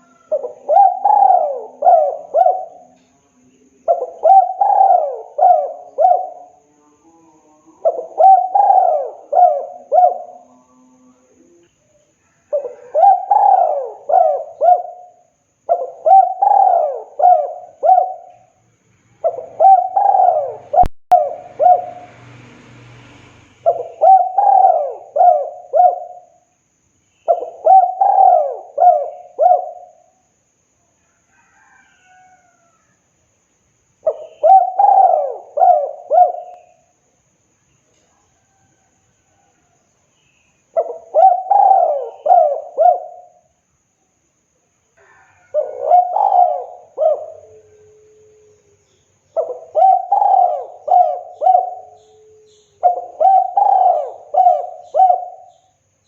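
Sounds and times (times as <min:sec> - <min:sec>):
dove cooing: 0:00.0 - 0:18.6, 0:19.2 - 0:22.2, 0:23.6 - 0:26.5, 0:27.2 - 0:30.3, 0:34.0 - 0:37.0, 0:40.7 - 0:43.5, 0:45.0 - 0:55.8
faint hum: 0:00.0 - 0:31.3.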